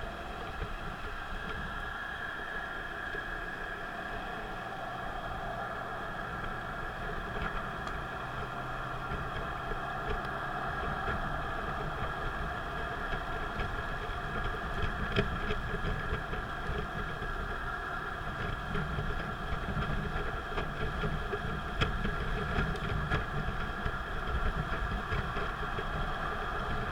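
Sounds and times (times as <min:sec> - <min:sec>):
car engine and road noise: 0:00.0 - 0:26.9.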